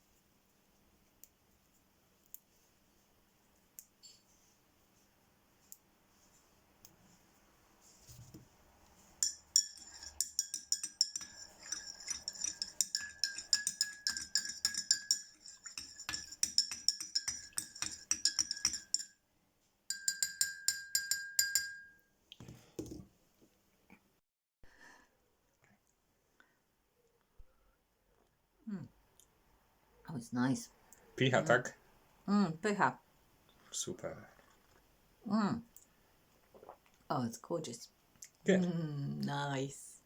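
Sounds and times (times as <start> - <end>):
spoon clinking in a glass: 9.2 - 19.2, 19.9 - 22.0.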